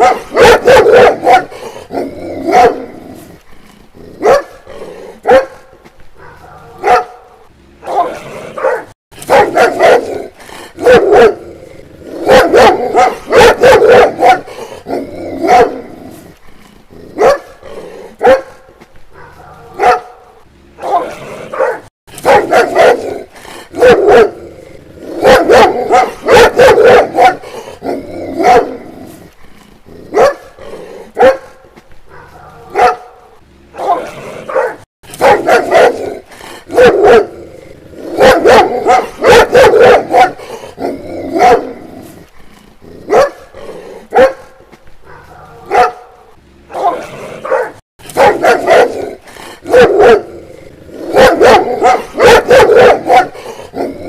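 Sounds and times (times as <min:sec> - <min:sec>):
dog barking: 0:00.0 - 0:03.0, 0:04.2 - 0:04.6, 0:05.2 - 0:11.5, 0:12.1 - 0:15.8, 0:17.2 - 0:17.6, 0:18.2 - 0:24.4, 0:25.0 - 0:27.6, 0:28.3 - 0:28.9, 0:30.1 - 0:30.6, 0:31.2 - 0:37.4, 0:38.0 - 0:40.6, 0:41.3 - 0:41.8, 0:43.1 - 0:43.5, 0:44.1 - 0:50.3, 0:51.0 - 0:54.0.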